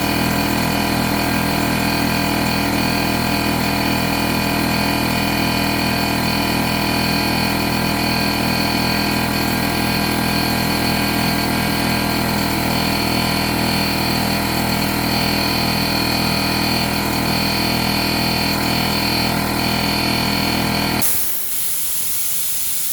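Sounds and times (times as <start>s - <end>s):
air compressor running: 0.0s - 22.9s
air hissing: 21.0s - 22.9s.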